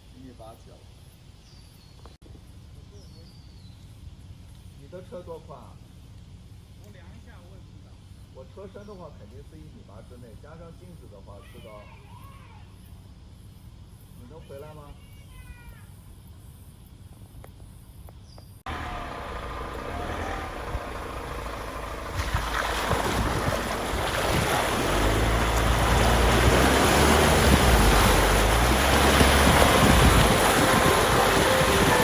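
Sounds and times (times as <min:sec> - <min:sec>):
deep rumble: 0:18.7 - 0:32.0
vehicle driving on dirt track: 0:18.7 - 0:32.0.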